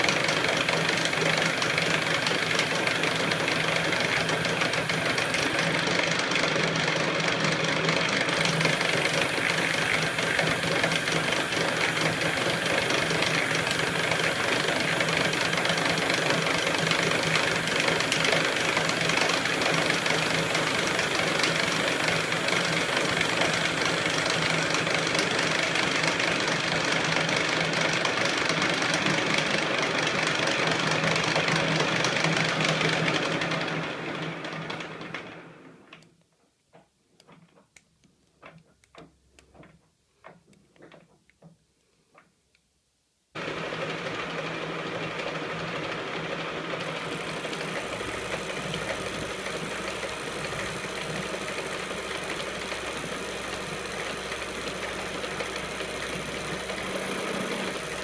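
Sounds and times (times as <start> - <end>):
metal lathe running: 0.0 - 34.8, 43.4 - 58.0.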